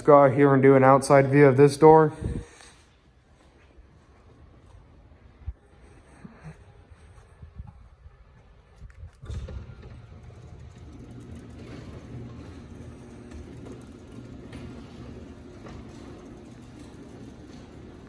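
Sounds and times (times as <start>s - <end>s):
garage door opener motor humming: 8.5s - 18.0s.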